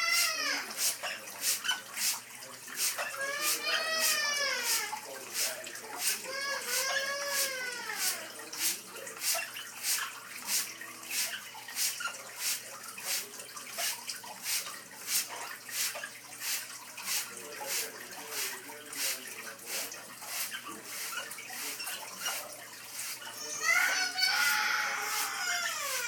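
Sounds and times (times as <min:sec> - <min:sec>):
spray bottle squirting water: 0:00.0 - 0:26.0.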